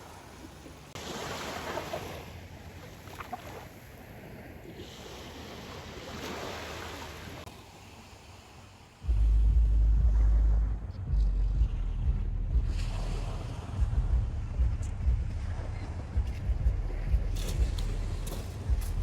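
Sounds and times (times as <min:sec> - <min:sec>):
small waves washing ashore: 0:00.0 - 0:09.1, 0:12.7 - 0:13.9
wind on microphone: 0:09.0 - 0:19.0.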